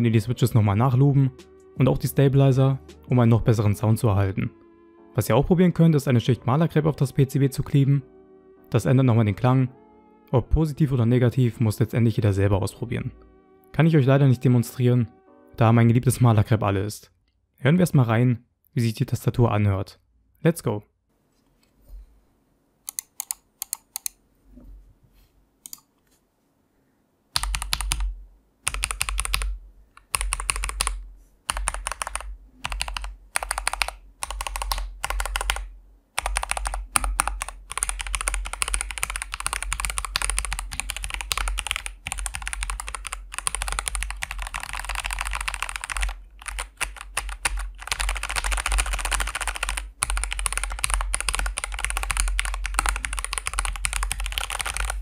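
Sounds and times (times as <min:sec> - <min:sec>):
typing on mechanical keyboard: 0:22.9 - 0:24.1, 0:27.4 - 0:55.0.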